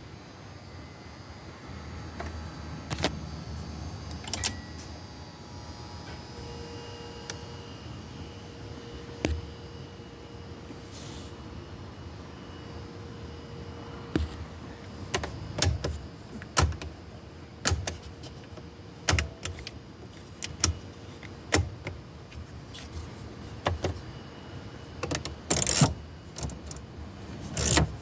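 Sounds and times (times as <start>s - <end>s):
dashboard switches clicking: 15.2s - 17.0s, 17.6s - 22.0s, 25.0s - 26.9s, 27.6s - 28.0s.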